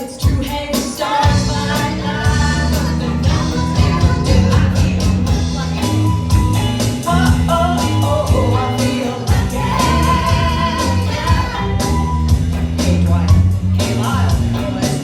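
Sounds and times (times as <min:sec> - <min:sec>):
person singing: 0:00.0 - 0:06.4, 0:07.0 - 0:12.1
bass: 0:00.0 - 0:15.0
country-rock band music: 0:00.0 - 0:15.0
drum beat: 0:00.0 - 0:15.0
melodic lead line: 0:01.3 - 0:15.0.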